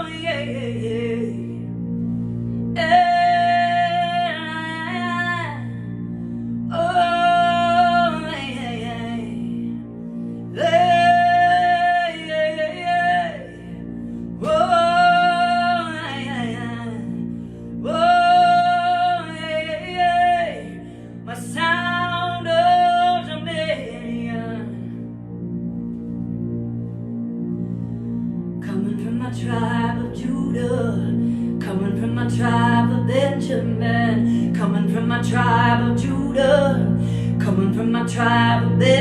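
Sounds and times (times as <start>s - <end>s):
low instrumental drone: 0.0s - 39.0s
person singing chant-like song: 10.6s - 17.2s.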